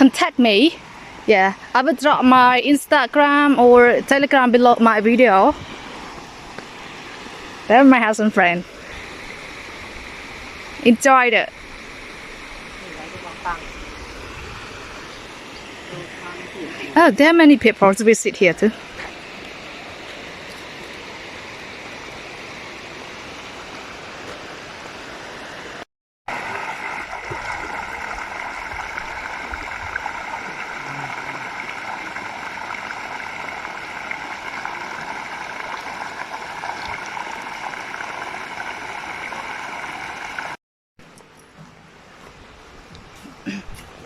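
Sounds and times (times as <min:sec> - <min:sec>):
waterfall rushing: 0:08.6 - 0:17.1, 0:26.3 - 0:40.6.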